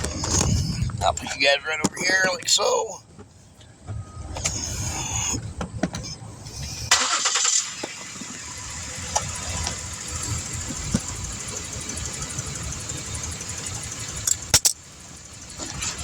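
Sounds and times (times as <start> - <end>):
car engine idling: 0.0 - 16.0.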